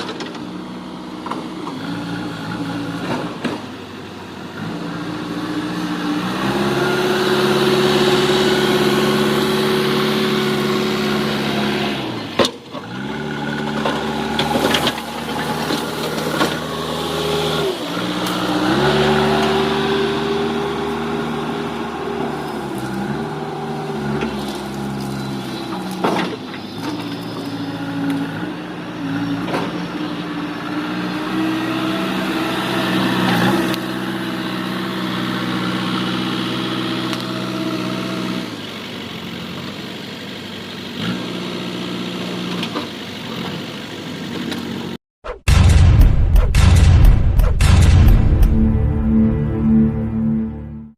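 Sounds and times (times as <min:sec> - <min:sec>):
diesel engine revving under load: 0:00.0 - 0:50.9
sharp knocks: 0:45.3 - 0:49.0.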